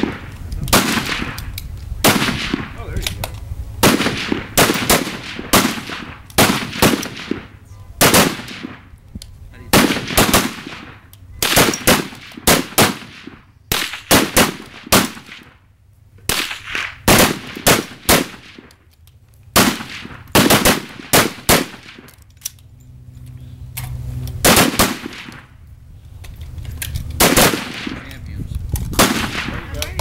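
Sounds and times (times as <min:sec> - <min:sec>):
rifle shots: 0:00.0 - 0:03.1, 0:03.8 - 0:08.9, 0:09.7 - 0:15.6, 0:16.3 - 0:18.7, 0:19.5 - 0:22.1, 0:24.4 - 0:25.5, 0:27.2 - 0:28.2, 0:28.9 - 0:30.0.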